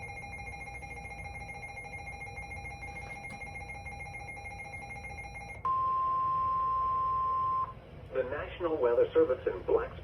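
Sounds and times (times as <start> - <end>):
faint steady tones: 0.0 - 7.8
low hum and hiss: 0.0 - 10.0.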